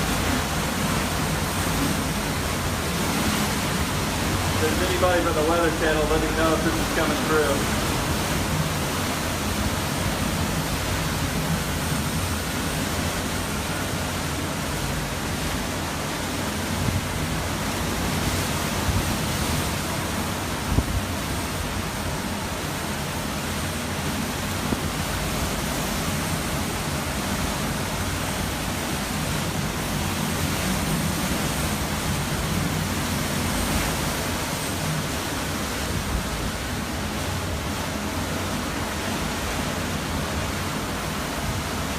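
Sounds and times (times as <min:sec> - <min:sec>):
hurricane wind rushing: 0:00.0 - 0:41.9.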